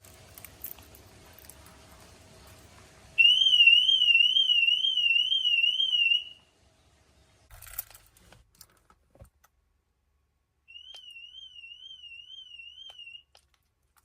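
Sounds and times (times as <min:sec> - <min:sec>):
car alarm warbling siren: 0:10.7 - 0:13.2.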